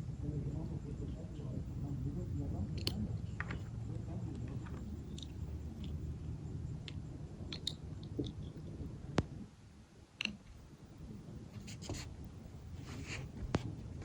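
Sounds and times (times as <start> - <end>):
small clicks and ticks: 2.6 - 9.4, 10.1 - 12.4.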